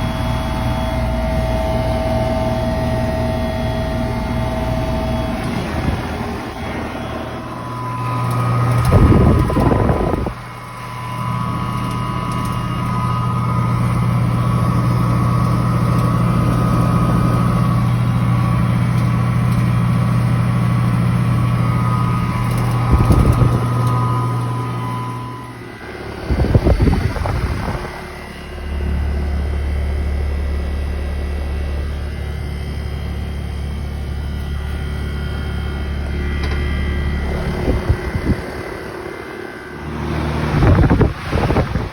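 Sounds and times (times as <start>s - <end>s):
air conditioner low hum: 0.0s - 41.9s
heat pump compressor and fan hum: 0.0s - 41.9s
rumble bursts: 1.1s - 10.7s, 33.5s - 41.9s.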